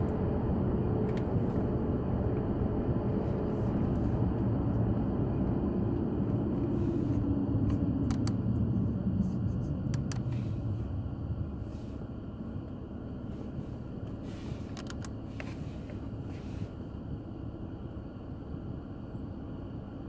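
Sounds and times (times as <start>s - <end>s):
car cabin rumble: 0.0s - 18.7s
light clicks: 7.7s - 8.4s, 9.9s - 10.4s, 14.7s - 15.6s.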